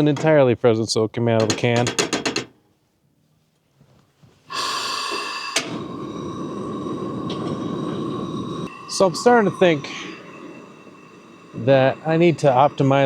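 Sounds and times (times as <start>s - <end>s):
gas stove burner hissing: 4.5s - 13.0s.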